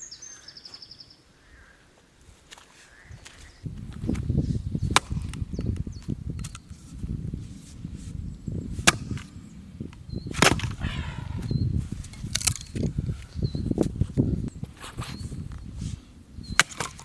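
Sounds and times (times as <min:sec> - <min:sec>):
wind rumble on microphone: 0:03.0 - 0:17.0
axe chopping wood: 0:04.9 - 0:05.4, 0:08.8 - 0:09.3, 0:10.3 - 0:10.8, 0:16.6 - 0:17.0.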